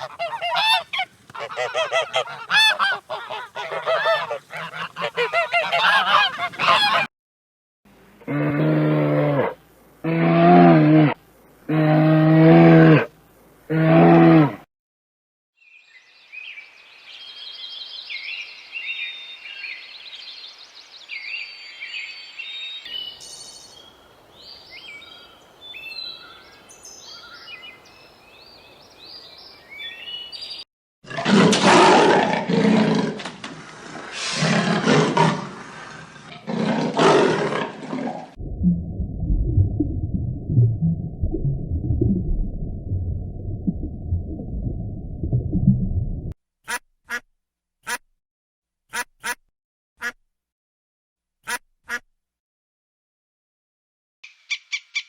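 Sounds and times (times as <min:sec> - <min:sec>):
small birds chirping: 0:00.0 - 0:07.0, 0:15.8 - 0:30.6
large animal calls: 0:00.0 - 0:07.1.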